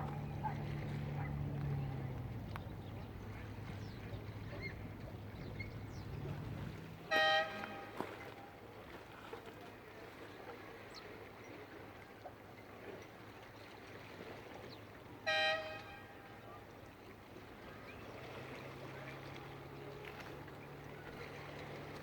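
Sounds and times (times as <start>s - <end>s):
short horn toot: 7.1s - 8.2s, 15.3s - 16.2s.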